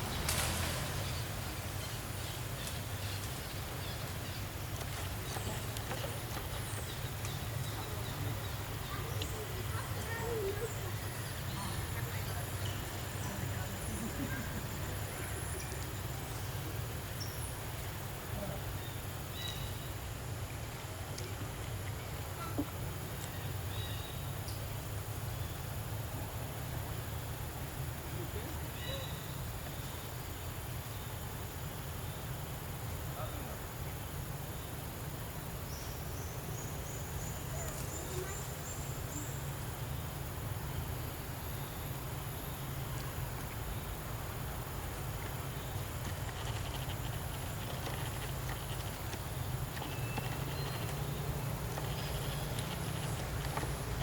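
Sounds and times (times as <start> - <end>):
high insect drone: 21.9 - 54.0
low outdoor rumble: 36.2 - 54.0.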